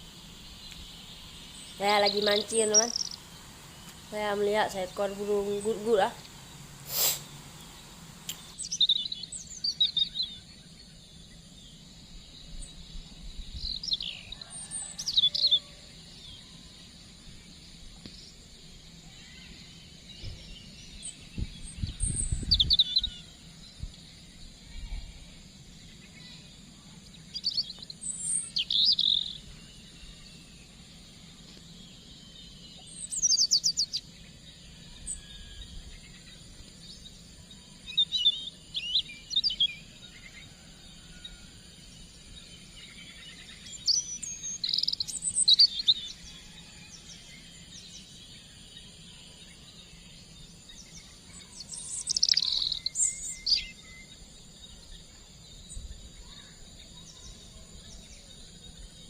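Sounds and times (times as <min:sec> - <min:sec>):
birds chirping and trilling: 0:00.0 - 0:59.0
faint high-pitched hum: 0:00.0 - 0:59.0.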